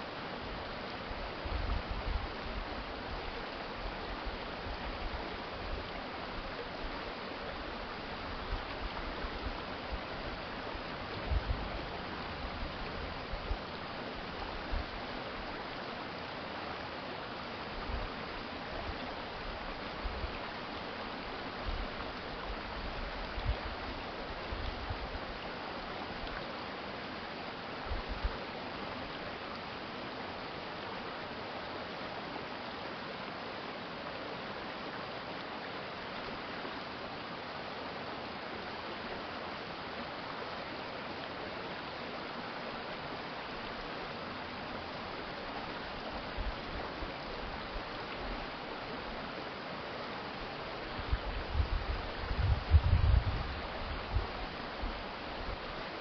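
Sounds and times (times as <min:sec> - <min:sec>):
stream flowing: 0:00.0 - 0:56.0.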